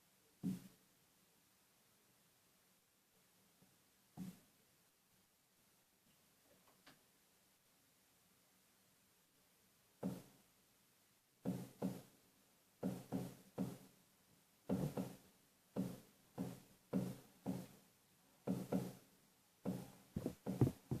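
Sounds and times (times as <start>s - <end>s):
sharp knocks: 19.7s - 21.0s.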